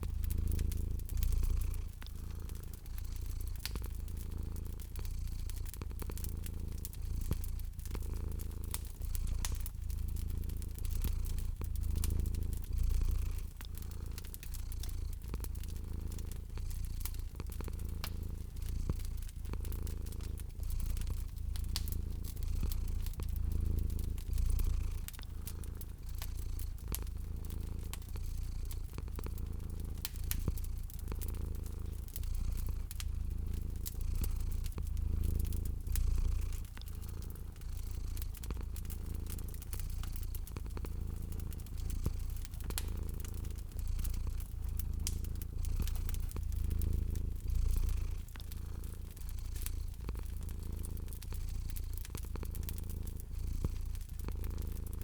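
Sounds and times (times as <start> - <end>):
cat purring: 0.0 - 55.0
fire crackling: 0.0 - 55.0.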